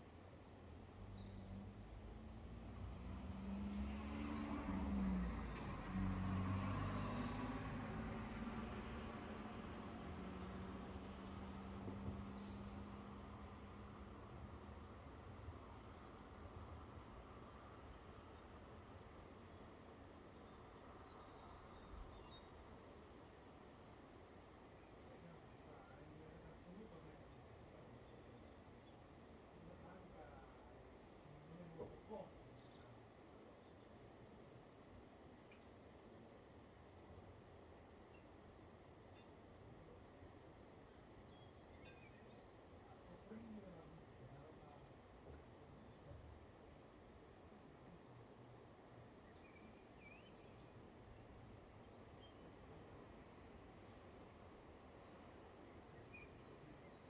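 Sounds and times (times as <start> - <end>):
insect chirping trill: 48.8 - 57.0.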